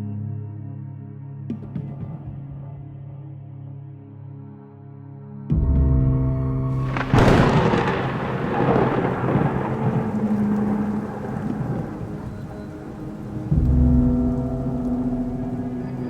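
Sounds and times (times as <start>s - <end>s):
low music drone: 0.0s - 16.0s
thunder rumbling: 6.7s - 16.0s
steady rain: 6.8s - 16.0s.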